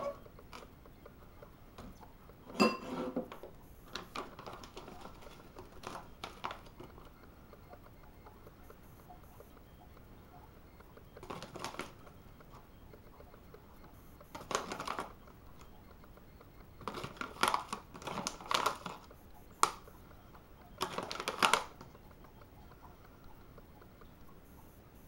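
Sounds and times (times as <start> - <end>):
pancake mix rattling and rustling: 2.5 - 7.1, 14.4 - 15.2, 16.8 - 19.1, 20.7 - 22.0.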